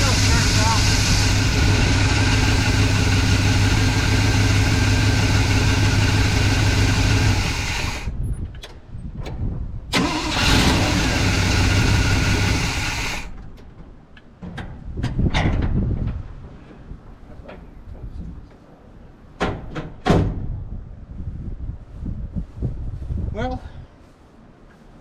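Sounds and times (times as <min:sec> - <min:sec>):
truck engine running: 0:00.0 - 0:08.2, 0:10.0 - 0:13.4.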